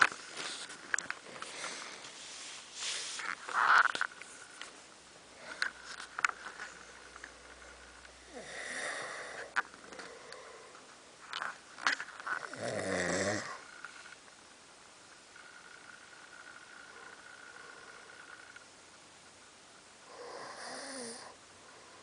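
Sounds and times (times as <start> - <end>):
person snoring: 8.2 - 10.8, 12.3 - 13.8, 20.1 - 21.4.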